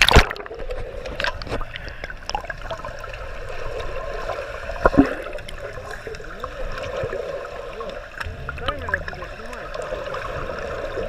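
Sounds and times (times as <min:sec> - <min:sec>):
water sloshing and trickling: 0:00.0 - 0:11.0.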